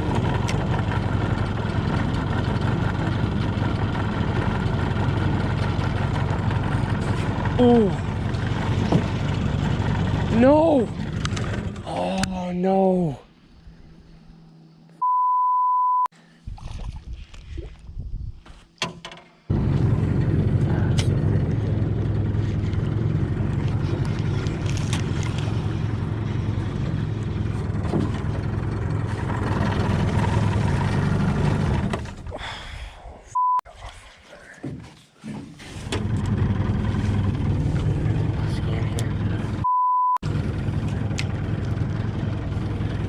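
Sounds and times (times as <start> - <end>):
boat motor running: 0.0 - 12.4, 19.5 - 32.3, 35.7 - 43.0
censor bleep: 15.0 - 16.1, 33.4 - 33.6, 39.6 - 40.2.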